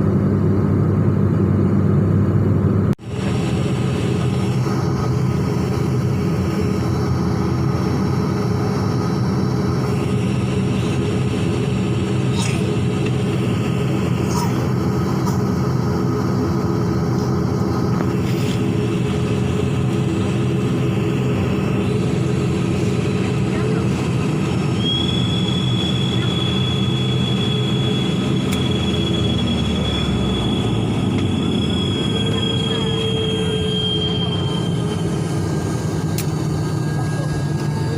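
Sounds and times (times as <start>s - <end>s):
airliner cabin engine drone: 0.0s - 37.9s
thin high whine: 24.6s - 37.9s.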